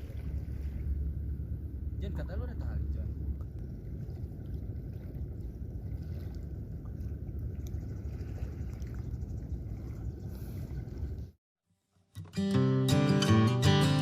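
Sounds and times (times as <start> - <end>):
low rumbling outdoor noise: 0.0 - 11.2.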